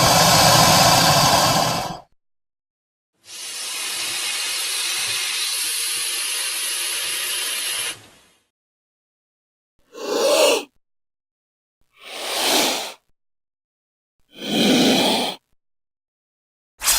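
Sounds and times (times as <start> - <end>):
snake hiss: 0.0 - 2.0.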